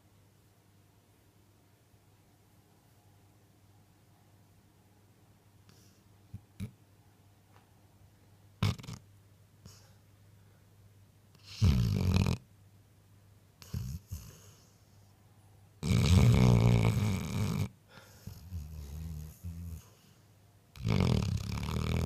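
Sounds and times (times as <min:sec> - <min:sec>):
dog snoring: 0:05.7 - 0:06.8, 0:08.6 - 0:09.0, 0:11.4 - 0:12.4, 0:13.6 - 0:15.0, 0:15.8 - 0:20.2, 0:20.8 - 0:22.0.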